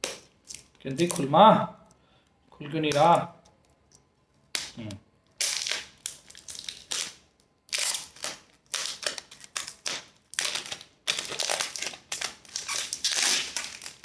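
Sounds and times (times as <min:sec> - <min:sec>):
packaging rustling and scraping: 0:05.6 - 0:14.0.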